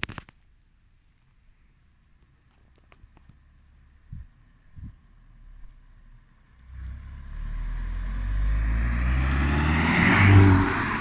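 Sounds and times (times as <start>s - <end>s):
car engine accelerating hard: 6.5s - 11.0s.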